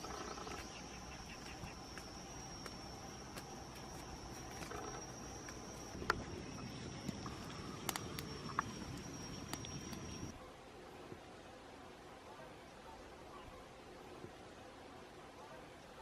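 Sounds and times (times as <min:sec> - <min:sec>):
high-pitched insect drone: 0:00.0 - 0:10.3.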